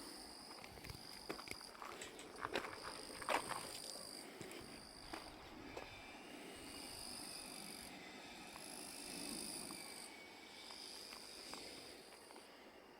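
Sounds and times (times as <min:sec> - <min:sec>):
insects trilling: 0:00.0 - 0:12.9.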